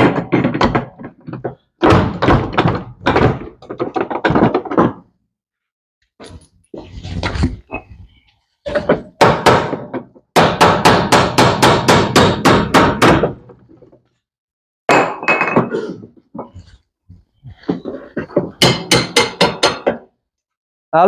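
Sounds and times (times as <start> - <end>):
sharp metal knocks: 8.7 - 13.6, 18.6 - 20.1.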